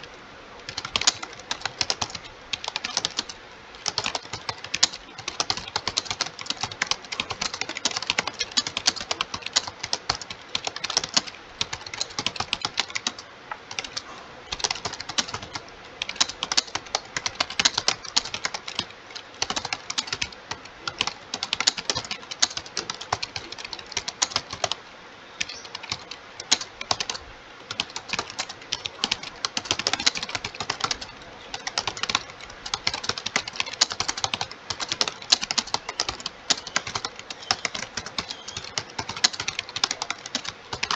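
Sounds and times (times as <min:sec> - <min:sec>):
fast typing on keyboard: 0:00.7 - 0:24.8, 0:25.4 - 0:40.9.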